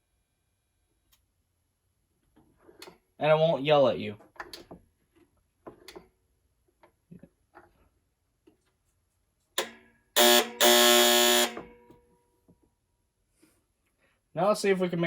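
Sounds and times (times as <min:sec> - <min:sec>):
tip-over alarm buzzer: 0:10.2 - 0:11.8.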